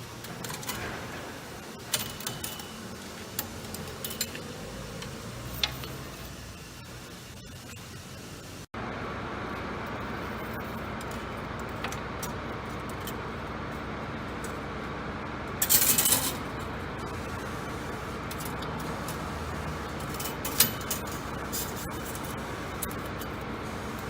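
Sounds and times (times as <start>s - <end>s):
steady background noise: 0.0s - 24.0s
small metallic clicks and clinks: 20.0s - 23.4s.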